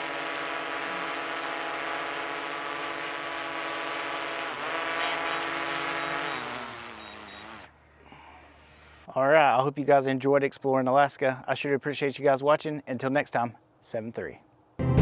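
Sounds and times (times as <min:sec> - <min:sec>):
drone propellers whining: 0:00.0 - 0:07.7.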